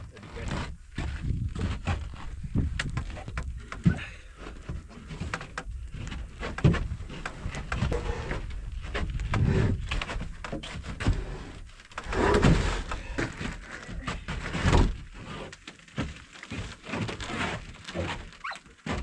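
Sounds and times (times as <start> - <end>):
timber scraping: 4.4 - 19.0
wooden knocks and thunks: 4.6 - 11.3
heavy thud: 7.9 - 9.8.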